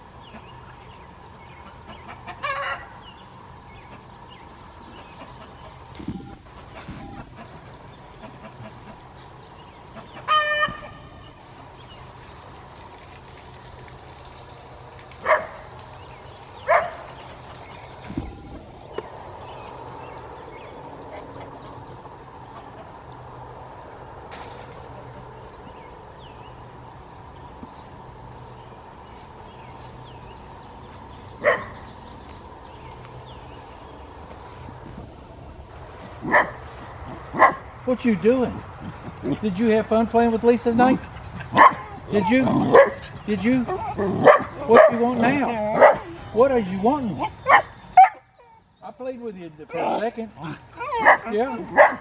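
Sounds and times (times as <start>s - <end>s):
faint high whine: 2.8s - 52.0s
dog barking: 15.2s - 15.6s, 16.7s - 17.1s, 31.4s - 31.8s, 36.2s - 36.6s, 37.2s - 37.7s, 41.5s - 43.1s, 43.7s - 45.0s, 45.7s - 46.1s, 47.4s - 48.6s, 50.8s - 52.0s.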